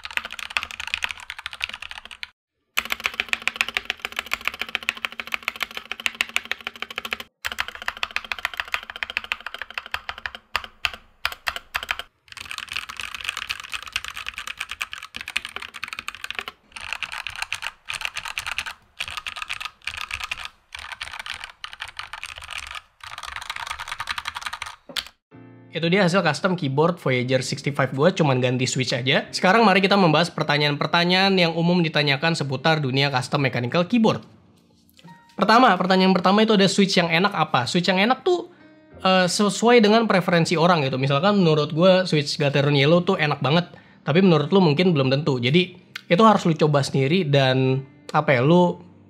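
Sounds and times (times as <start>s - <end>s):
mechanical keyboard typing: 0.0s - 25.2s.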